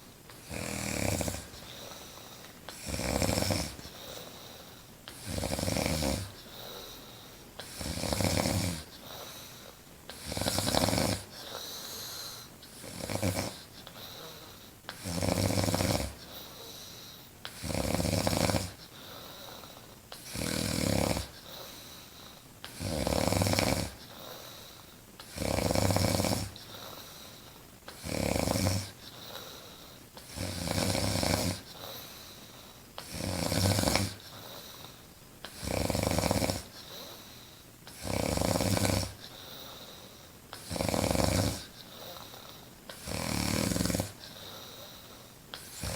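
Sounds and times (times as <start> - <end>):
quiet breathing: 0.0 - 45.9
woman snoring loudly: 0.4 - 1.6, 2.7 - 3.9, 5.2 - 6.4, 7.6 - 8.9, 10.1 - 11.6, 12.8 - 16.2, 17.6 - 18.8, 20.3 - 21.4, 22.8 - 24.0, 25.3 - 26.6, 27.9 - 29.0, 30.3 - 31.7, 33.1 - 34.2, 35.6 - 36.7, 37.9 - 39.2, 40.6 - 41.7, 43.0 - 44.2.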